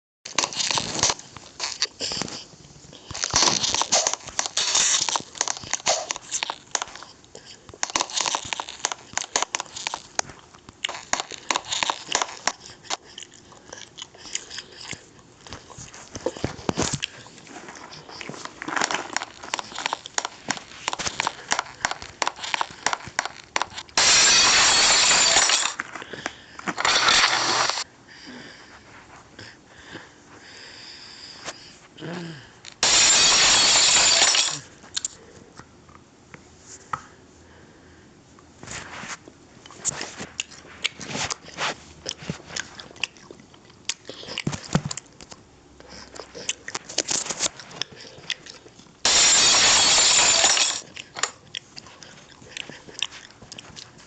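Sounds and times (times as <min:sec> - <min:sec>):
hard objects clattering and clinking: 0:16.2 - 0:27.8, 0:32.7 - 0:34.7, 0:49.1 - 0:51.4.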